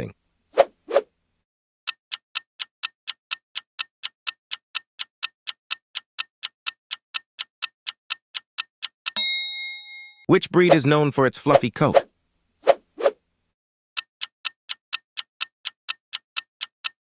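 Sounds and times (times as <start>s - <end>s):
clock ticking: 1.9s - 9.4s, 14.0s - 17.0s.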